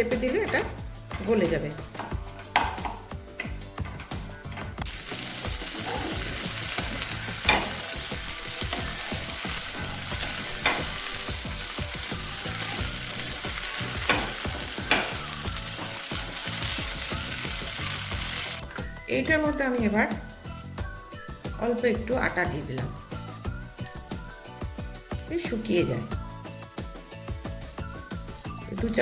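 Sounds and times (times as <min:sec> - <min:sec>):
spatula knocking against pan: 0:01.9 - 0:04.7, 0:14.0 - 0:15.2
greens sizzling in a pan: 0:04.8 - 0:19.6.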